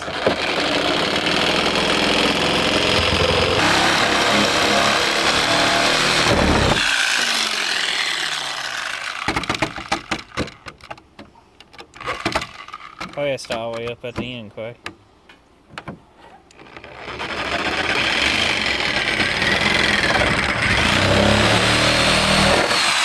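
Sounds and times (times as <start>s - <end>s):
power cutter cutting metal: 0.0s - 9.8s, 17.1s - 23.0s.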